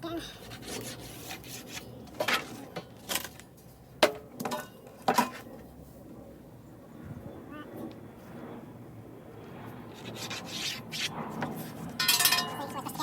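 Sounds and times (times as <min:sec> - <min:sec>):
metal tools clinking: 0:12.0 - 0:12.8.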